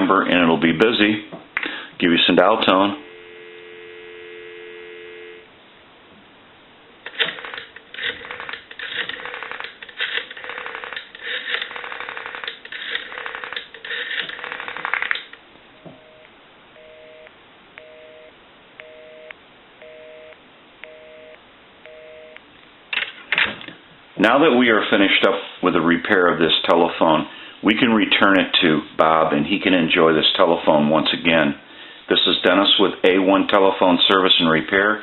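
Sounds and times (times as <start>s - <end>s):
telephone busy signal: 3.0s - 5.5s, 16.0s - 22.4s
rotary phone dial clicking: 7.1s - 15.4s.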